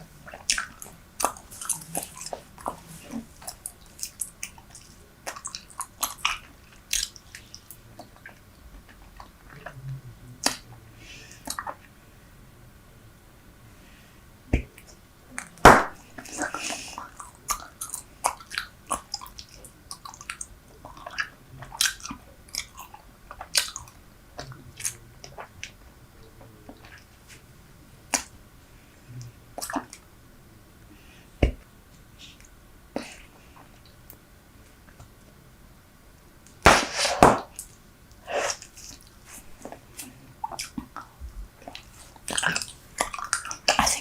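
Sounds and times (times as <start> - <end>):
gum chewing wet smacks: 0.2 - 9.8, 14.6 - 27.1, 38.5 - 44.0
gum snaps: 3.5 - 9.3, 17.2 - 25.8, 28.1 - 28.3.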